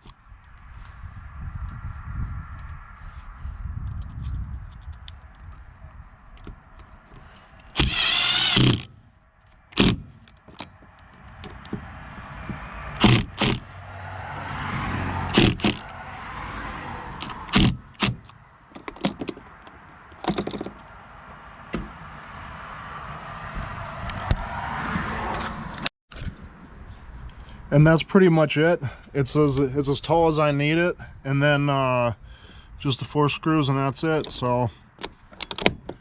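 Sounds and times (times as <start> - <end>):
sharp knocks and clicks: 6.4 - 13.7, 15.3 - 15.9, 17.2 - 20.8
power drill whining: 7.6 - 9.0.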